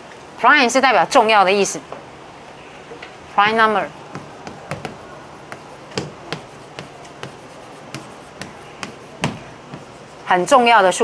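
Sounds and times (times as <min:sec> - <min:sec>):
taps and clicks writing on board: 0:04.2 - 0:10.0.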